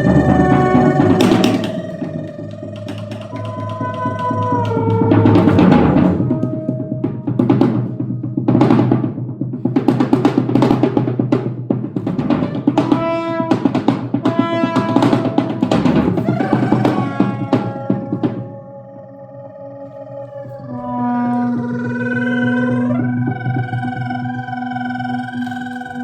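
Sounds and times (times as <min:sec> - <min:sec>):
rapid drum and percussion strokes: 0:00.0 - 0:18.6.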